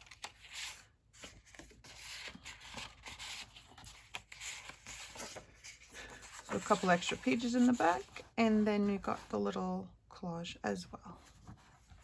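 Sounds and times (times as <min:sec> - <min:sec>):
paper pages rustling: 0:00.0 - 0:09.4.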